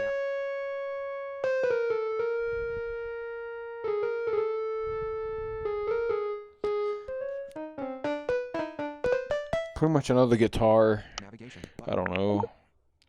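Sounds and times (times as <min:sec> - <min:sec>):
electric piano notes: 0:00.0 - 0:10.3.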